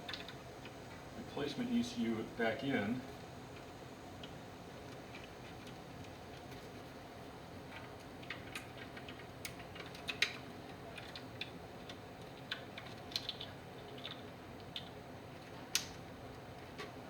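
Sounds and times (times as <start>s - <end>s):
light clicks and taps: 7.7s - 17.0s.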